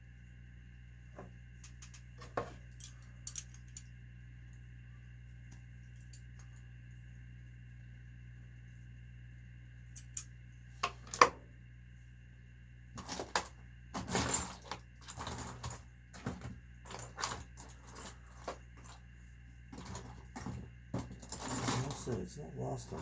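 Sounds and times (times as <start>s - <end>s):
small metal tools clinking: 1.6s - 3.9s, 13.0s - 19.0s, 19.7s - 23.0s.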